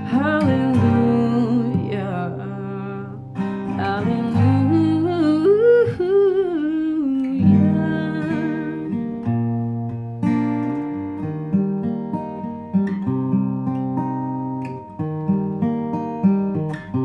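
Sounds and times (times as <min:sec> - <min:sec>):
strummed acoustic guitar: 0:00.0 - 0:17.0
person humming a melody: 0:03.8 - 0:08.9.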